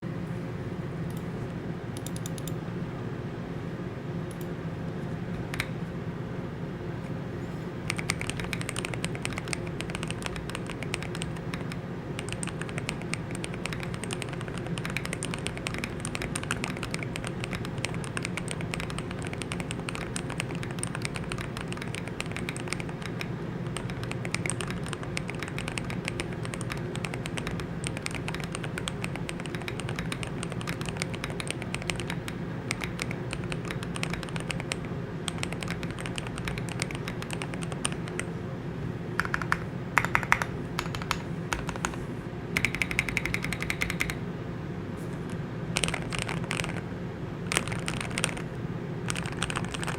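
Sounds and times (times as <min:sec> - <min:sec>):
fast typing on mechanical keyboard: 0:07.8 - 0:38.3, 0:39.2 - 0:42.0, 0:42.6 - 0:44.2, 0:45.8 - 0:46.9, 0:47.5 - 0:49.9.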